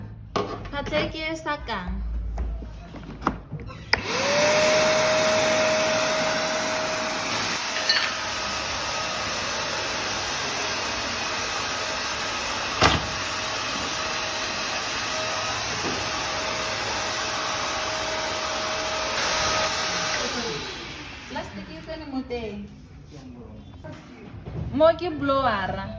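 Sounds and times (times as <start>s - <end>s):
vacuum cleaner running: 3.9s - 22.2s.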